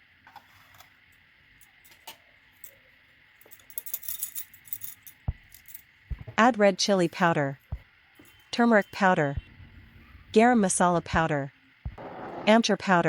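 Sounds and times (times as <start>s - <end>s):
dull knock: 6.1s - 6.4s.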